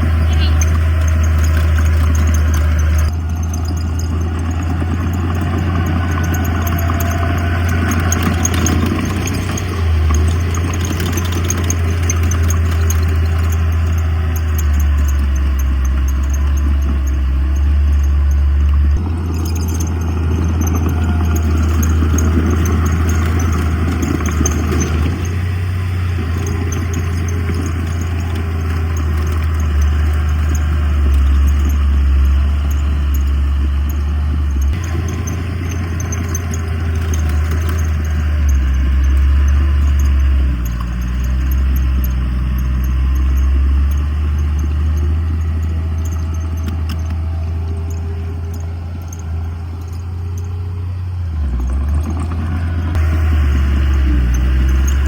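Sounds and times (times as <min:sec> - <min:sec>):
heavy diesel machines droning: 0:00.0 - 0:55.0.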